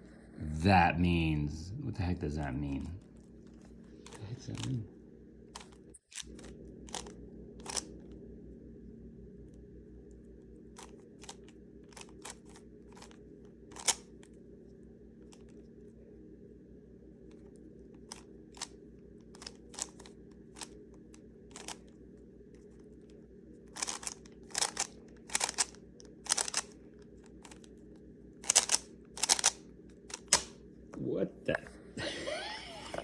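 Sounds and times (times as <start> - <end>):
low room hum: 0.0 - 33.0
plastic puzzle cube clicking: 5.6 - 7.9, 10.8 - 14.1, 19.3 - 20.7, 21.5 - 21.8, 23.7 - 26.8, 28.4 - 30.5.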